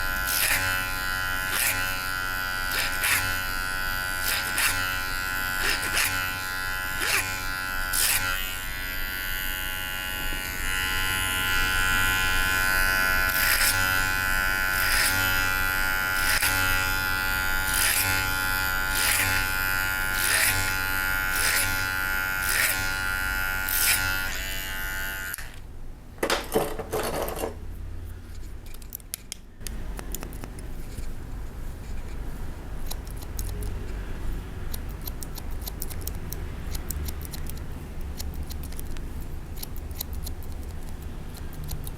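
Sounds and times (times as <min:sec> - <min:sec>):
electric hair clipper buzzing: 0:00.0 - 0:25.6
scissor snips: 0:02.6 - 0:03.4, 0:04.2 - 0:08.4, 0:20.2 - 0:20.8, 0:28.7 - 0:31.1, 0:32.8 - 0:34.0, 0:34.6 - 0:41.9.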